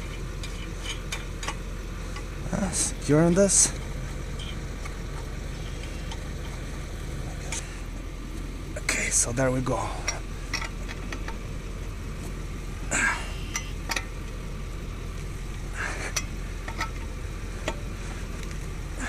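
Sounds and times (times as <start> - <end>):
metal tools scraping: 0.0 - 6.6
low vehicle rumble: 0.0 - 19.0
metal tools clinking: 15.8 - 17.8.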